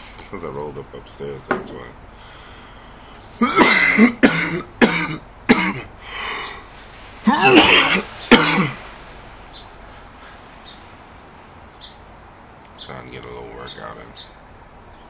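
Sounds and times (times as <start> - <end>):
man coughing: 3.4 - 5.9, 7.2 - 8.8.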